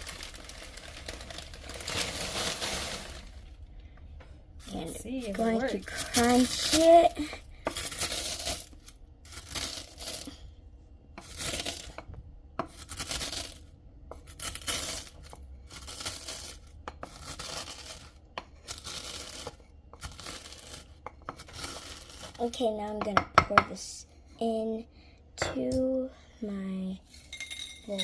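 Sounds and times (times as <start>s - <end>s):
corn flakes crunching in a mortar: 0.0s - 3.4s, 4.6s - 10.4s, 11.2s - 12.1s, 12.7s - 22.4s.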